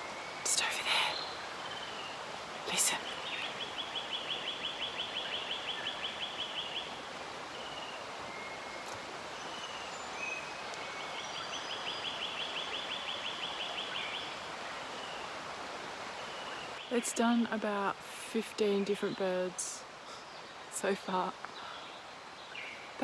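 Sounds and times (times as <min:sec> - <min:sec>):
lyrebird singing: 0:00.4 - 0:06.9.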